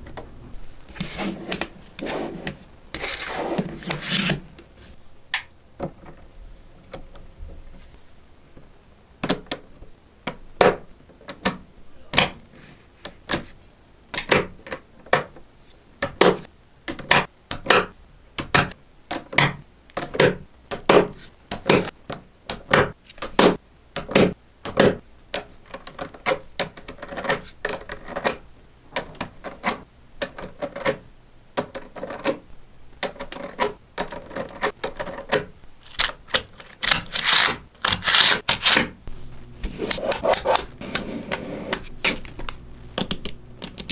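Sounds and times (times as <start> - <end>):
magnetic balls snapping together: 14.1 - 15.3, 16.0 - 28.4, 39.8 - 43.9.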